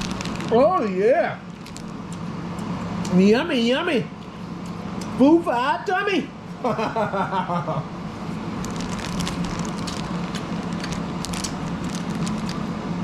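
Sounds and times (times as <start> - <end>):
watermelon chewing crunches: 0.0 - 3.2, 8.2 - 12.8
steady low hum: 0.0 - 13.0.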